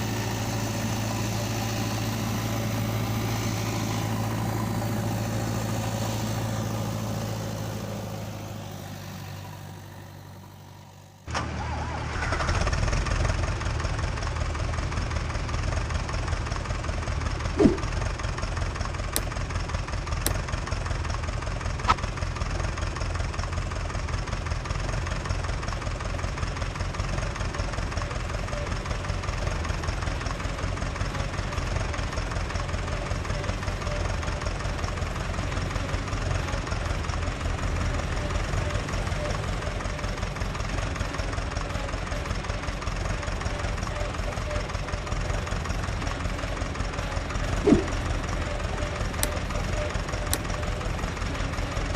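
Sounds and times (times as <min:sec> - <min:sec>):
engine idling: 0:00.0 - 0:51.9
sharp clicks: 0:49.2 - 0:49.5.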